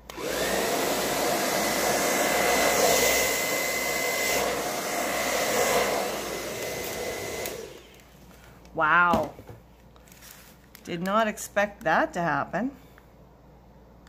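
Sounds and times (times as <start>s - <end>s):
hair dryer running: 0.0s - 8.0s.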